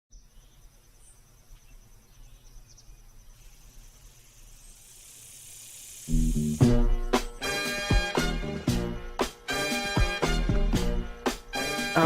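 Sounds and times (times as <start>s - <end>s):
insect trill: 0.1s - 8.2s, 10.8s - 12.0s
soft hiss: 1.0s - 7.8s.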